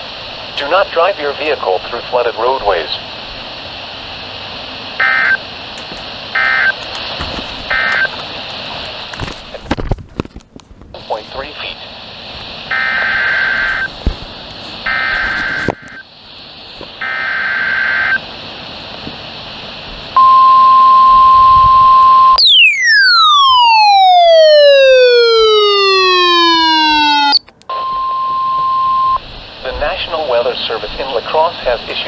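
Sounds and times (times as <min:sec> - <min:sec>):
tone falling in pitch: 0:21.6 - 0:29.2
warbling data bursts: 0:21.7 - 0:27.4
steady alert tone: 0:22.4 - 0:27.4.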